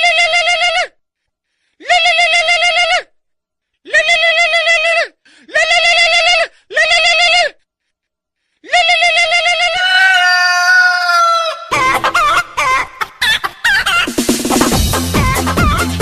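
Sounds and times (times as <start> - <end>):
dance music: 14.1 - 16.0.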